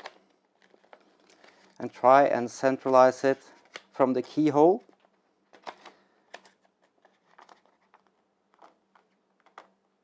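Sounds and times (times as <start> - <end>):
sticker paper crinkling: 4.9 - 9.8.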